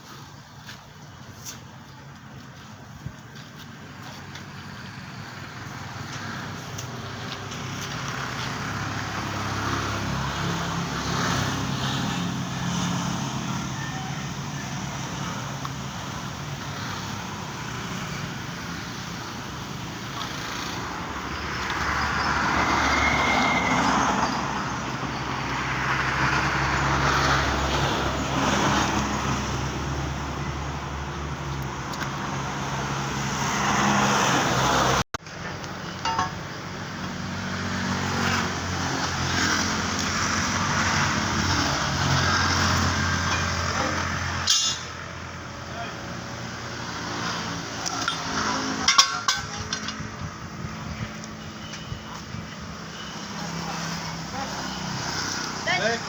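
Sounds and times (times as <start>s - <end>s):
passing traffic: 0.0s - 56.0s.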